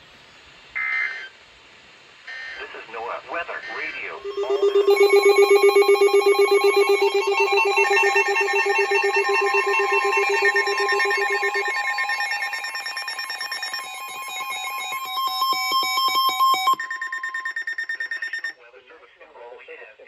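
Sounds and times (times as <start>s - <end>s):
pulsing electronic alert tones: 3.7s - 18.5s
steady alert tone: 3.7s - 18.5s.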